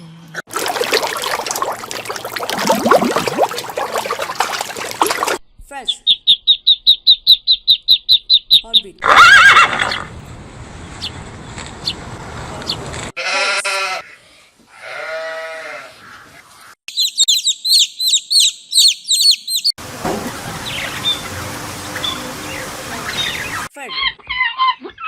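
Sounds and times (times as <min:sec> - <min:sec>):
rapid high-pitched bird chirping: 0:05.9 - 0:09.0, 0:16.9 - 0:19.8
noisy outdoor ambience: 0:08.8 - 0:13.2, 0:19.8 - 0:23.7
loud animal call: 0:09.0 - 0:10.1
sheep bleating: 0:13.2 - 0:14.1, 0:14.7 - 0:16.0.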